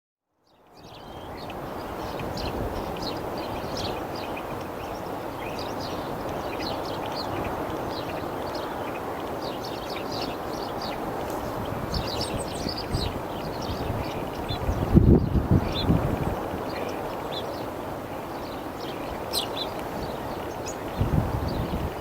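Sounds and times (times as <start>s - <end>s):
small birds chirping: 0.4s - 22.0s.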